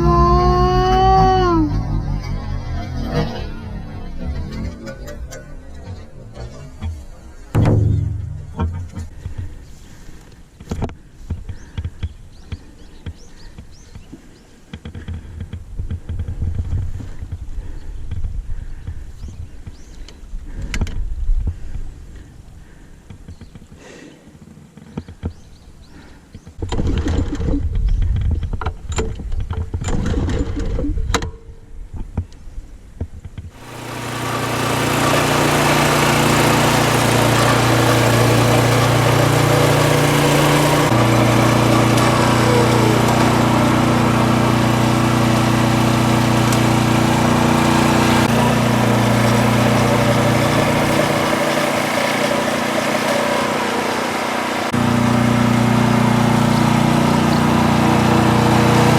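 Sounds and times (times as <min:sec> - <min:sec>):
mower engine running: 0:33.6 - 0:58.9.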